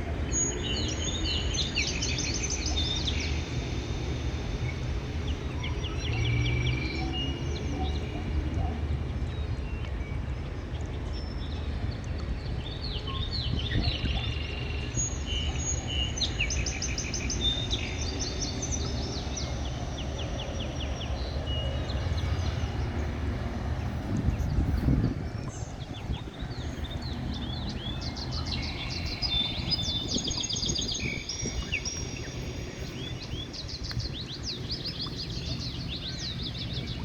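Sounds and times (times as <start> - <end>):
steady low rumble: 10.4 - 37.0
small birds chirping: 10.8 - 37.0.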